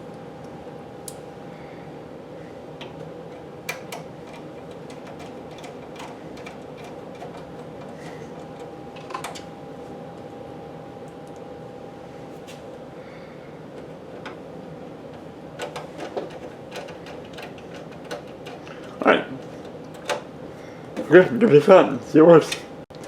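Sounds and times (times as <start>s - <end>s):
steady background hum: 0.0s - 23.0s
screwdriver and hands tapping computer case: 2.8s - 9.5s, 15.1s - 20.3s.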